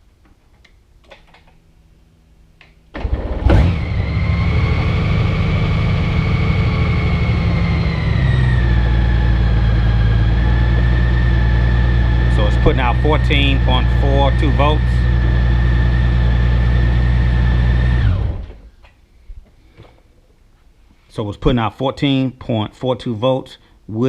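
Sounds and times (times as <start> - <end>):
motorcycle engine idling: 3.8 - 18.2.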